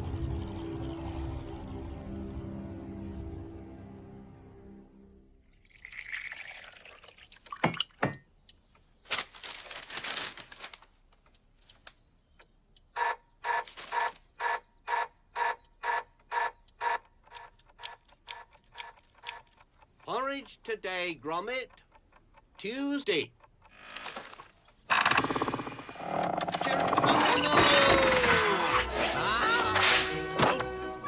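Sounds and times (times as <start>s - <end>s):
mechanism clicking: 12.9s - 20.6s, 21.4s - 26.0s
ratcheting tick with slight ring: 13.0s - 20.6s.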